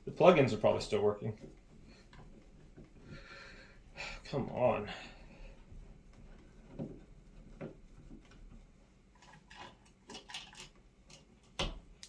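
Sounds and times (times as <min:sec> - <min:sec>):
small clicks and scrapes of hands: 0:01.4 - 0:03.2, 0:06.1 - 0:12.0.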